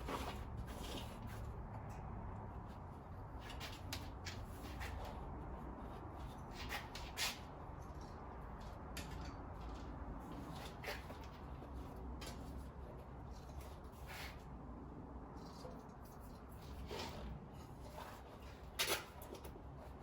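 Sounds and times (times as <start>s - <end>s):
clicks and rustles of handling tools: 6.2s - 14.4s, 15.3s - 20.0s.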